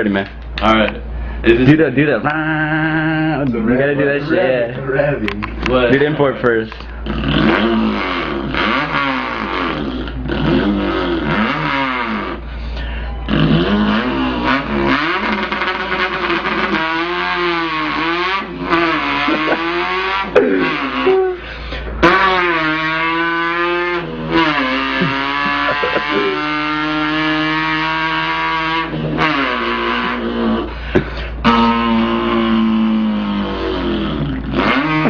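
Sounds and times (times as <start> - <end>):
man imitating car engine: 0.0 - 35.0.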